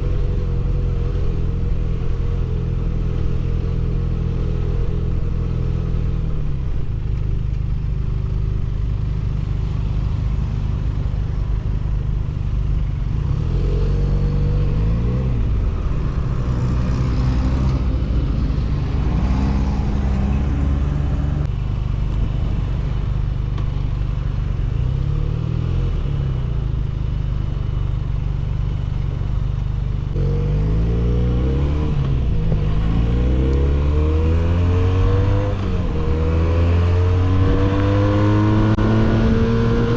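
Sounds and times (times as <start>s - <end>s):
motorcycle engine accelerating: 30.1s - 39.9s.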